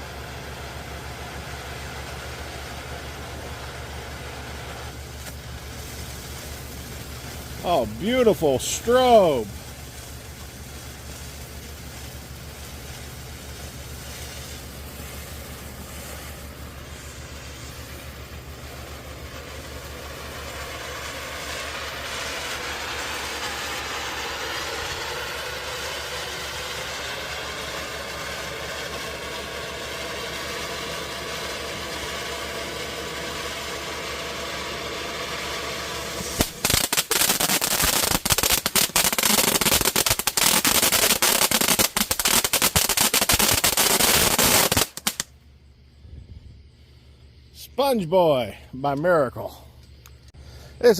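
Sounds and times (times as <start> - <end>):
firework crackling pops: 0.0 - 45.4
firework fountain hissing: 0.0 - 46.0, 50.3 - 50.9
low steady hum: 45.2 - 50.9.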